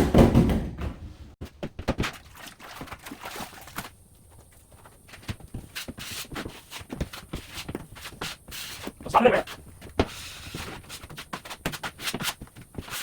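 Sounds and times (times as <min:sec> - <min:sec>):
loud thump: 0:00.0 - 0:01.1
knocks and scrapes on drywall: 0:00.0 - 0:02.9, 0:05.2 - 0:13.0.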